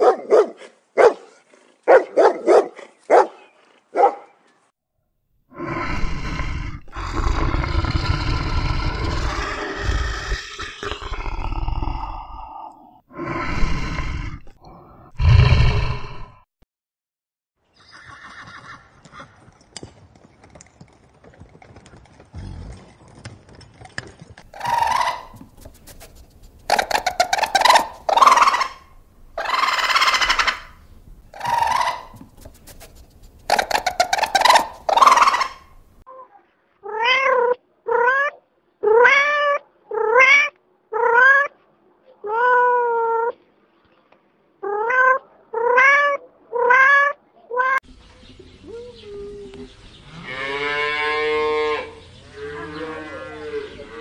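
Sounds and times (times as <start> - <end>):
deep animal roars: 5.5 - 16.4
harsh yowling calls: 24.5 - 35.8
cat meowing: 36.9 - 41.5, 44.6 - 47.8.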